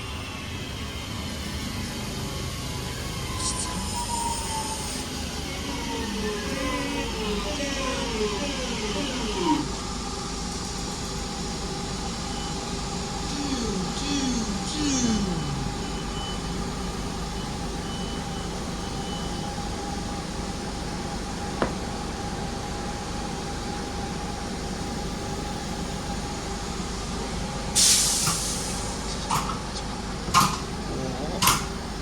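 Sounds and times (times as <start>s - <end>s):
train equipment humming: 0.0s - 32.0s
air hiss burst: 27.8s - 29.1s.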